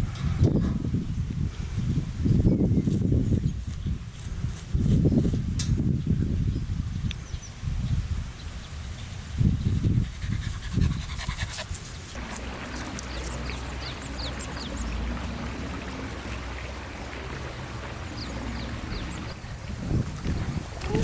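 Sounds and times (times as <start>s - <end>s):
dog panting: 10.0s - 15.4s
creek water running: 10.0s - 21.0s.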